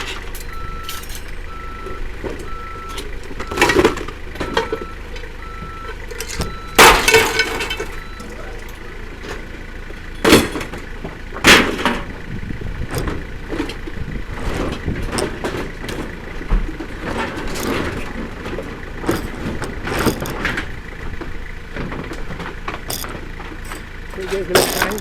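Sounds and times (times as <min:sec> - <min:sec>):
scrap metal clanking: 0:00.0 - 0:04.9, 0:05.9 - 0:12.2, 0:12.9 - 0:25.0
loud metal bangs: 0:06.6 - 0:08.1, 0:10.2 - 0:12.2
low rumble: 0:10.5 - 0:23.5.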